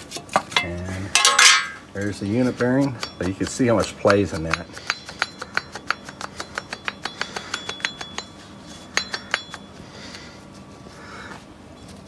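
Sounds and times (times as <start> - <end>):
ringing metal clinks: 4.9 - 9.8.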